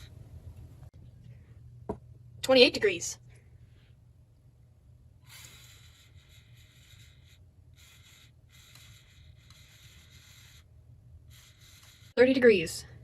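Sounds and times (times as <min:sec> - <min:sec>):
toy electric motors whirring: 0:05.2 - 0:10.7.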